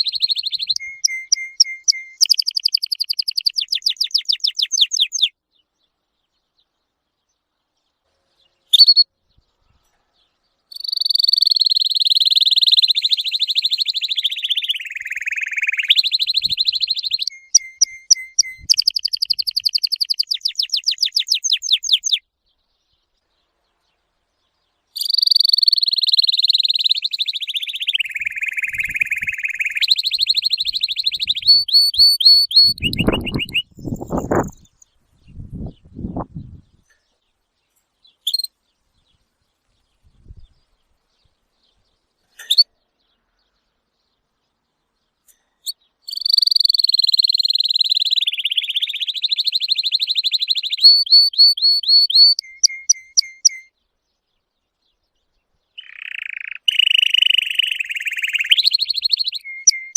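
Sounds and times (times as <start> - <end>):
songbird trilling: 0.0 - 5.3, 8.7 - 9.1, 10.7 - 22.2, 25.0 - 36.9, 38.2 - 38.5, 45.6 - 53.7, 55.8 - 59.9.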